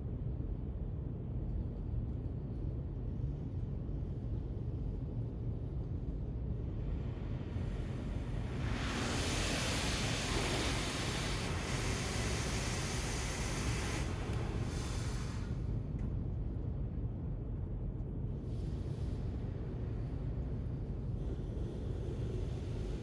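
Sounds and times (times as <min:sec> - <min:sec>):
loud hiss: 0:07.5 - 0:15.7
road traffic rumble: 0:07.6 - 0:15.6.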